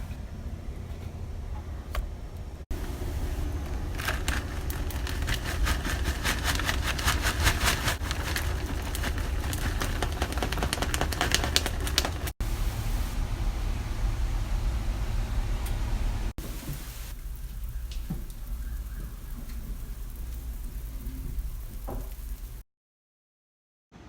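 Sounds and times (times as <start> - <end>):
steady low hum: 11.7 - 22.6.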